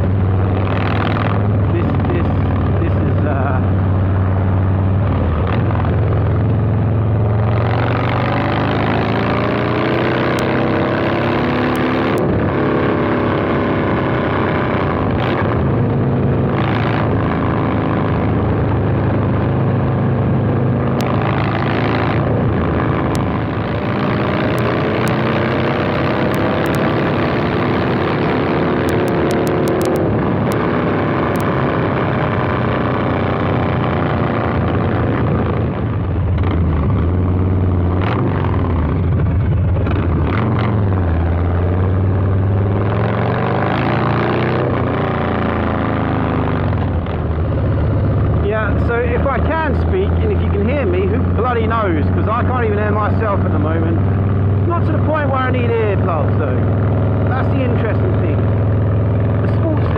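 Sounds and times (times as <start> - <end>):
motorcycle engine accelerating: 0.0 - 59.9.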